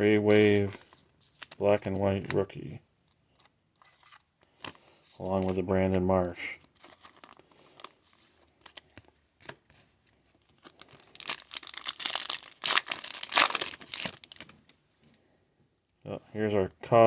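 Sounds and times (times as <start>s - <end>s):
foil wrapper crinkling and tearing: 6.8s - 9.6s, 10.6s - 14.8s.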